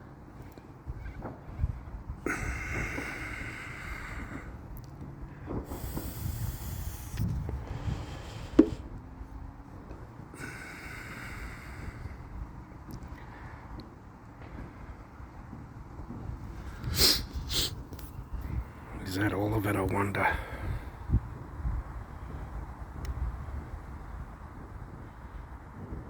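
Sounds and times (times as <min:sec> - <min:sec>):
distant fireworks banging and crackling: 0:00.0 - 0:26.0
fireworks hissing: 0:02.2 - 0:09.1, 0:14.5 - 0:19.4
sharp firework crack: 0:02.3 - 0:04.6, 0:05.4 - 0:08.9, 0:16.1 - 0:18.0.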